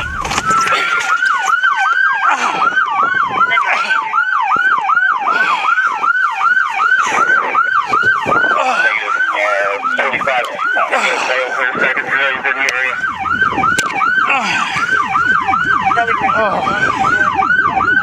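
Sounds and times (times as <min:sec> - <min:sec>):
siren tone gliding down: 0:00.0 - 0:10.9
police siren yelping: 0:00.0 - 0:18.0.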